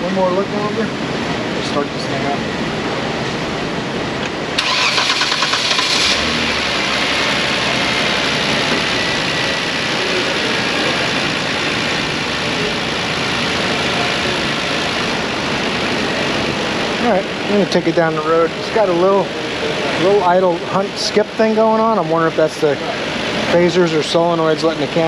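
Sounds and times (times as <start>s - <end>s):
starter cranking engine: 4.6s - 15.2s
car engine idling with misfire: 4.6s - 25.0s.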